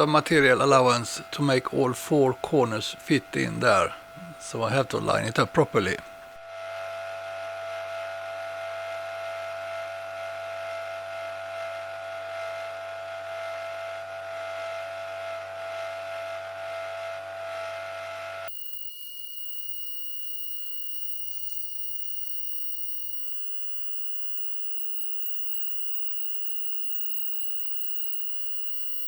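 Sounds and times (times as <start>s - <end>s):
high steady tone: 18.5s - 29.0s
workshop machine whine and hiss: 18.5s - 29.0s.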